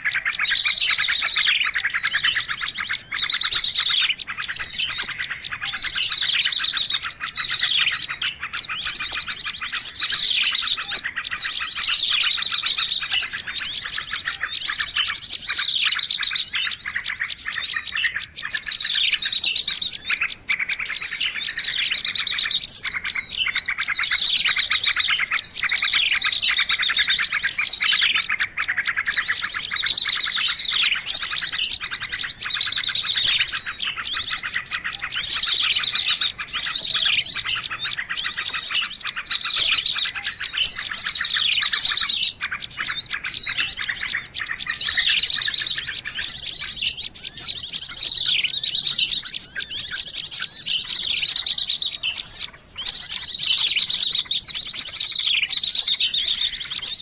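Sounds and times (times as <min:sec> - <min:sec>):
small birds chirping and trilling: 0:00.0 - 0:57.0.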